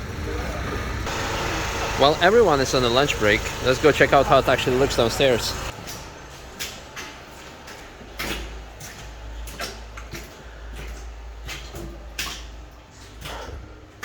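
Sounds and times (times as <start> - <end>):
footsteps and scuffs: 5.7 - 13.4.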